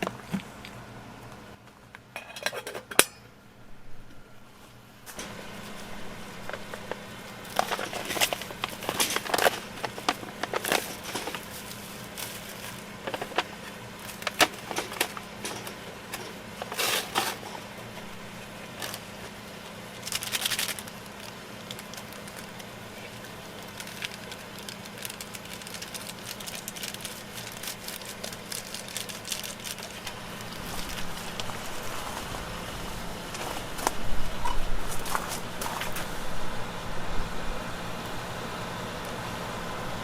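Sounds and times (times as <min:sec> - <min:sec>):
crackles and sharp clicks: 0:06.4 - 0:32.4.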